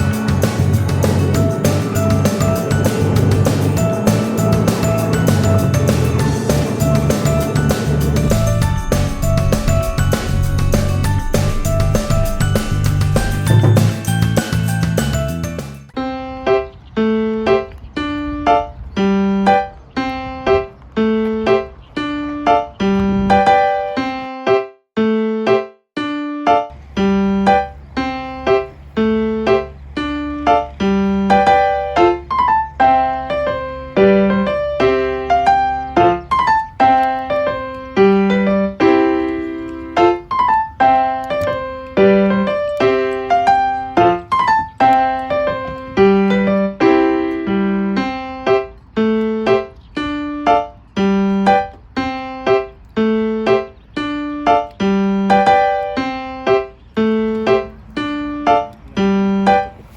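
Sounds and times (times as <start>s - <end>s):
low sustained bass: 0.0s - 15.4s
piano melody: 0.0s - 59.9s.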